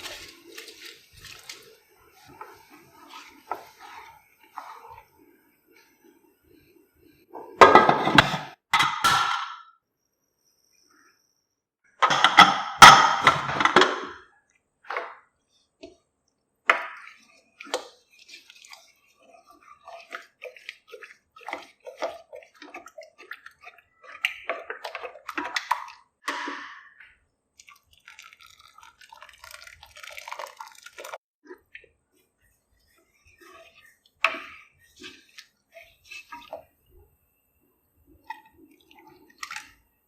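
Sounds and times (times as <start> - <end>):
spoon stirring thick porridge: 0.0 - 6.0, 16.7 - 26.1, 27.6 - 39.9.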